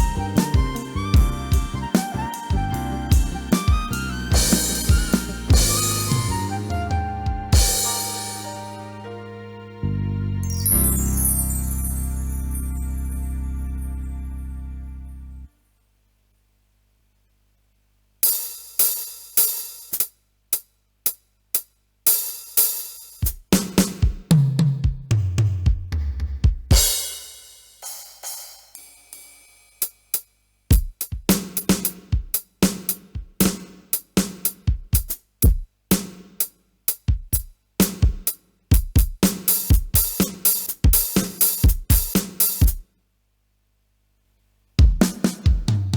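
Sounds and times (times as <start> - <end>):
drum fill on toms: 0.0 - 8.8, 23.2 - 27.3, 30.7 - 36.4, 37.0 - 42.8, 44.8 - 45.9
drum beat: 0.0 - 8.9, 23.2 - 27.4, 30.7 - 42.8, 44.8 - 45.9
cymbal and hi-hat hits: 0.0 - 9.1, 18.2 - 42.8.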